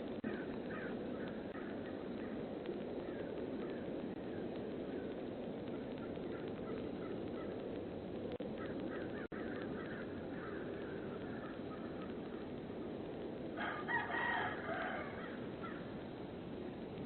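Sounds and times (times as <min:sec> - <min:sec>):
microphone hiss: 0:00.0 - 0:17.0.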